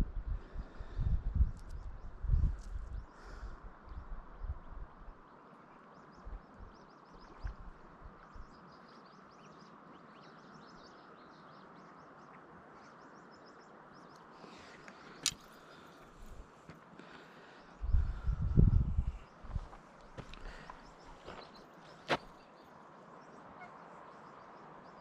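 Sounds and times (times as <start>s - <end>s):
faint outdoor background: 0.0s - 25.0s
small birds chirping: 17.0s - 25.0s.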